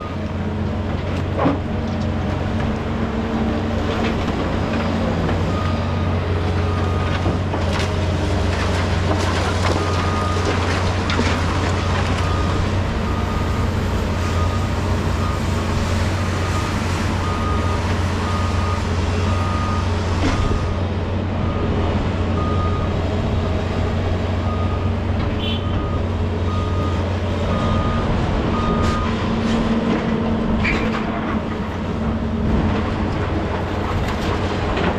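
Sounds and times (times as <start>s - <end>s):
heavy diesel machinery running: 0.0s - 34.9s.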